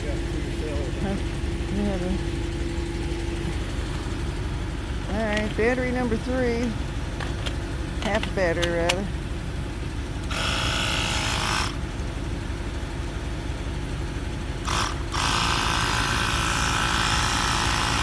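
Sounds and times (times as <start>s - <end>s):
steady low rumble: 0.0s - 10.3s
tyre inflator compressor running: 0.0s - 18.0s.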